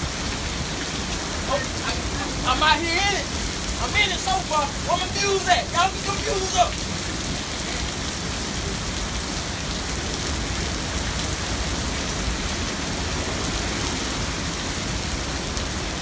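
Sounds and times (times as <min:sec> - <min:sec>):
hurricane rain and wind: 0:00.0 - 0:16.0.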